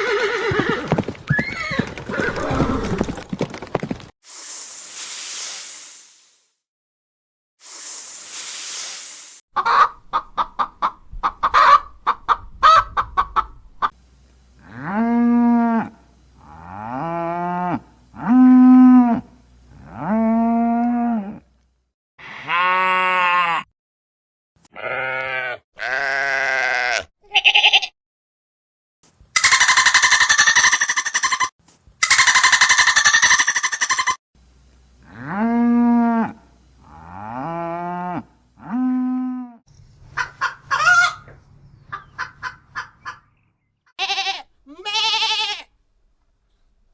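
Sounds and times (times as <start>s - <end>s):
sheep bleating: 24.7s - 27.9s, 44.0s - 45.7s.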